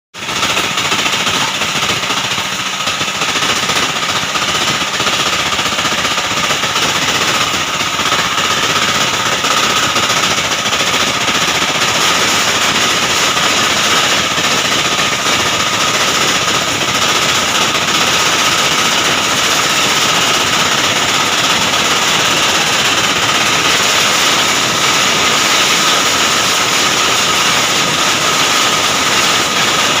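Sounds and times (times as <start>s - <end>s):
stone crusher rattling with whine: 0.2s - 30.0s.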